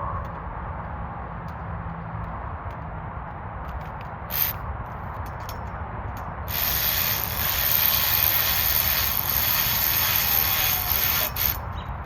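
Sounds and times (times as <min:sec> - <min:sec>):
cordless power tool running: 0:06.5 - 0:11.6.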